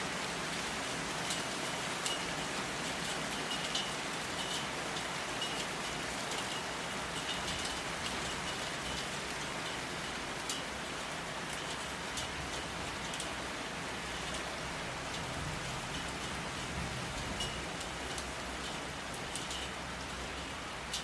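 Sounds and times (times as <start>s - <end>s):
steady rain hiss: 0.0s - 21.0s
raindrops dripping on hard surface: 0.1s - 21.0s.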